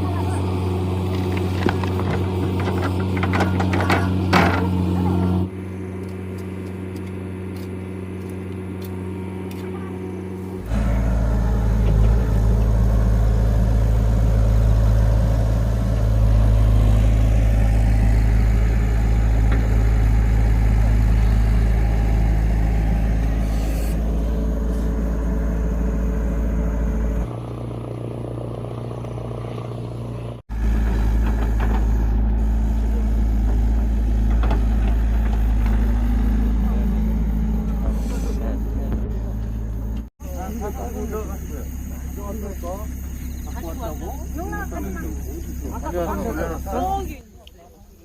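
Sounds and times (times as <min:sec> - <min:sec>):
vehicle rumble from inside: 0:00.0 - 0:48.0.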